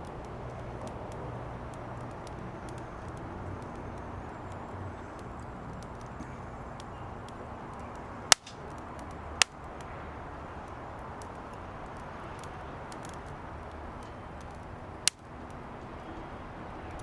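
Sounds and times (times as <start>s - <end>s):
firewood crackling: 0.0s - 17.0s
loud sharp pops: 8.3s - 8.8s.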